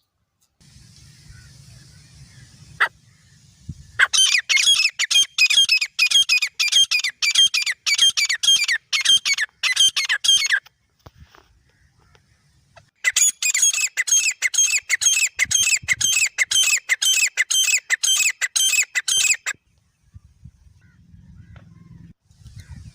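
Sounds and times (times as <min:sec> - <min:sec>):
bird harsh high calls: 0:00.7 - 0:10.7, 0:11.8 - 0:19.6.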